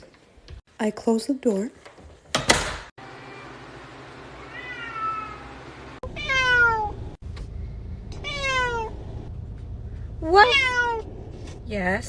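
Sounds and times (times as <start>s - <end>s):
cat meowing: 4.4s - 7.0s, 8.2s - 9.0s, 10.3s - 11.1s.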